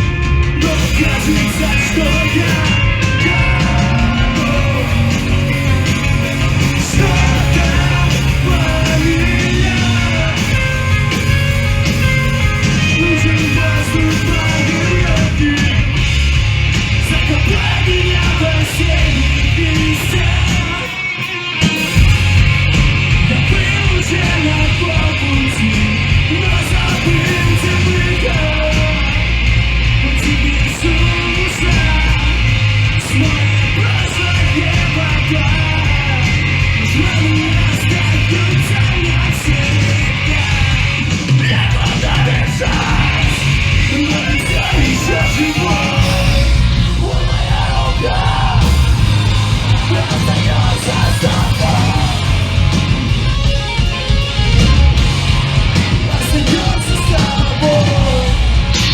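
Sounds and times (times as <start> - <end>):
shouted vocals: 0.0 - 15.8, 33.0 - 53.4
bass guitar: 0.0 - 58.9
distorted electric guitars: 0.0 - 58.9
drums: 0.0 - 58.9.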